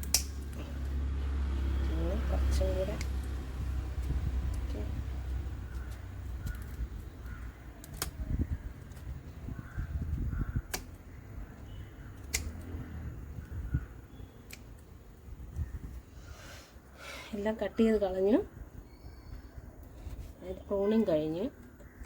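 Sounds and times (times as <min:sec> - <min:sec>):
pruning scissors snipping: 0:00.0 - 0:01.0, 0:01.8 - 0:04.8, 0:05.7 - 0:09.0, 0:10.6 - 0:11.0, 0:12.0 - 0:12.8, 0:14.4 - 0:14.9
leaves and stems rustling: 0:00.0 - 0:22.0.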